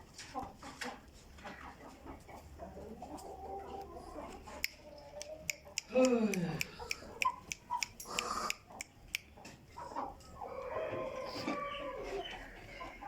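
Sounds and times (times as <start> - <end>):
chickens clucking: 0.0 - 13.0
sharp clicks: 4.6 - 9.3.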